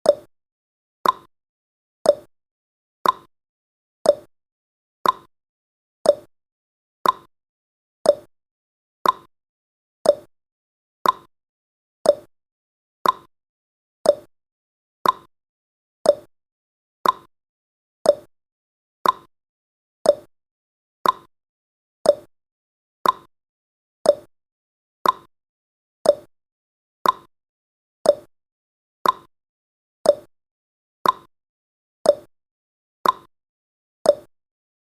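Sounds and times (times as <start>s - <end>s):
clock tick-tock: 0.0s - 0.3s, 1.0s - 1.3s, 2.0s - 2.3s, 3.0s - 3.3s, 4.0s - 4.3s, 5.0s - 5.3s, 6.0s - 6.3s, 7.0s - 7.3s, 8.0s - 8.3s, 9.0s - 9.3s, 10.0s - 10.3s, 11.0s - 11.3s, 12.0s - 12.3s, 13.0s - 13.3s, 14.0s - 14.3s, 15.0s - 15.3s, 16.0s - 16.3s, 17.0s - 17.3s, 18.0s - 18.3s, 19.0s - 19.3s, 20.0s - 20.3s, 21.0s - 21.3s, 22.0s - 22.3s, 23.0s - 23.3s, 24.0s - 24.3s, 25.0s - 25.3s, 26.0s - 26.3s, 27.0s - 27.3s, 28.0s - 28.3s, 29.0s - 29.3s, 30.0s - 30.3s, 31.0s - 31.3s, 32.0s - 32.3s, 33.0s - 33.3s, 34.0s - 34.3s.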